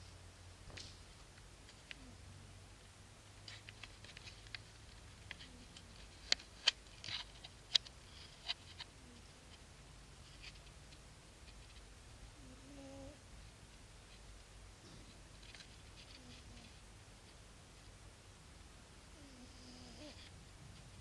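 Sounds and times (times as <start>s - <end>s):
cat snoring: 12.4s - 13.2s, 19.1s - 20.2s.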